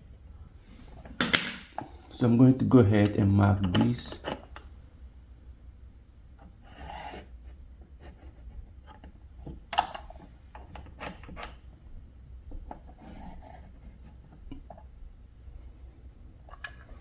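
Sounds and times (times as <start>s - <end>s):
pencil scratching on drywall: 6.4s - 9.1s, 12.7s - 14.7s.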